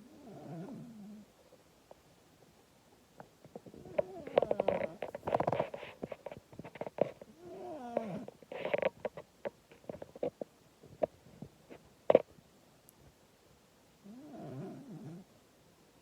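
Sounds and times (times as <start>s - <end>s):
cat snoring: 0.0s - 1.3s, 3.8s - 5.4s, 7.4s - 8.8s, 14.0s - 15.3s.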